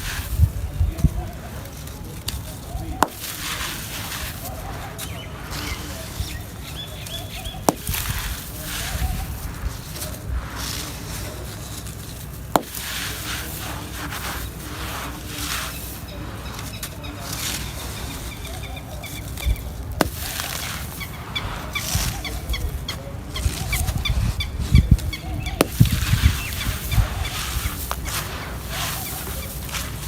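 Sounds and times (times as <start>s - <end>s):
concrete crunching: 0.0s - 30.0s
bird chirps: 5.0s - 7.7s.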